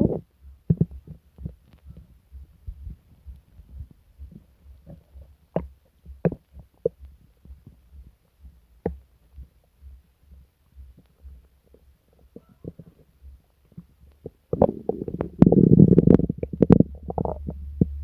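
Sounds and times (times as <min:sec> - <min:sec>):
stomach gurgles: 0:00.0 - 0:02.1, 0:02.7 - 0:07.8, 0:11.0 - 0:18.0
low stomach throbbing: 0:00.0 - 0:18.0.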